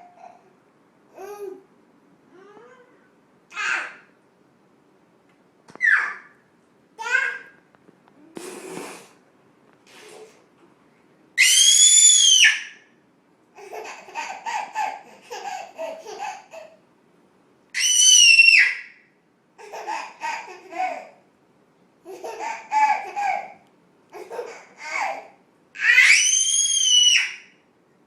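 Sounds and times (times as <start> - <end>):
short breathy hiss: 8.3 - 9.2, 9.8 - 10.5
baby laughing hysterically: 13.6 - 16.8, 19.6 - 21.2, 22.0 - 23.6, 24.2 - 26.0.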